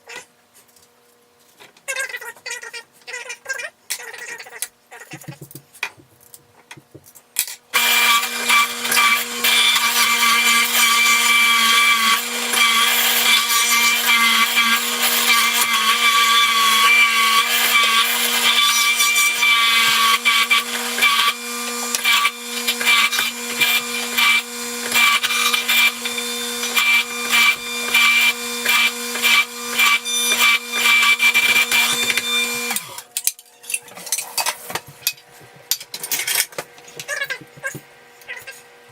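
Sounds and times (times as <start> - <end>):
juicer motor humming: 7.8 - 13.3, 19.2 - 33.1.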